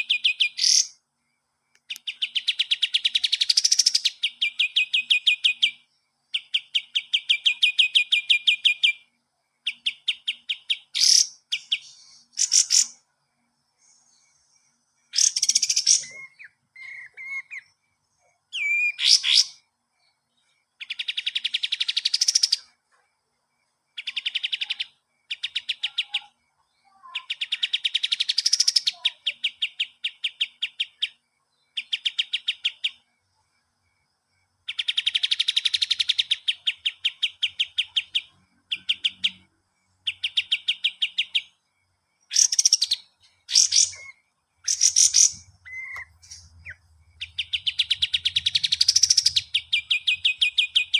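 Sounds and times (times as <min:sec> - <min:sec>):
sharp whistled bird calls: 0:00.0 - 0:01.0, 0:01.8 - 0:13.0, 0:15.1 - 0:19.7, 0:20.4 - 0:22.8, 0:24.0 - 0:33.0, 0:34.7 - 0:39.5, 0:40.1 - 0:41.6, 0:42.2 - 0:50.9
songbird singing rapid notes: 0:00.0 - 0:01.0, 0:01.7 - 0:13.0, 0:13.7 - 0:22.8, 0:23.9 - 0:50.9.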